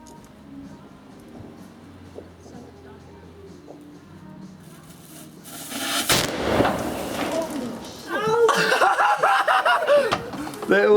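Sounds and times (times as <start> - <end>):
short rising hiss: 4.6 - 7.4
sharp bang: 5.7 - 7.8
people shouting and whooping: 7.4 - 10.6.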